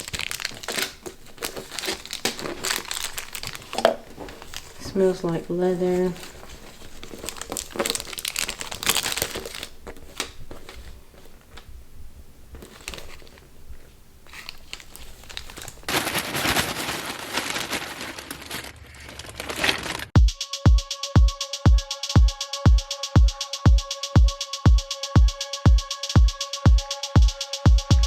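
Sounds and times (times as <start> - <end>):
packaging crinkling: 0.0 - 20.2.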